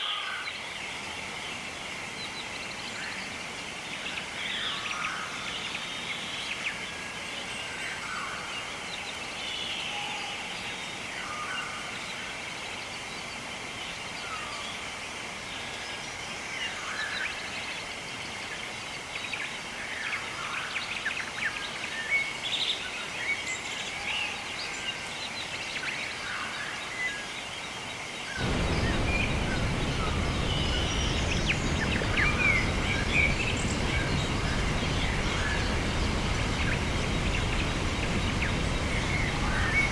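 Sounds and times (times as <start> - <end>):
wild birds chirping: 27.6 - 39.9
steady high hiss: 28.4 - 39.9
steady rushing noise: 28.4 - 39.9.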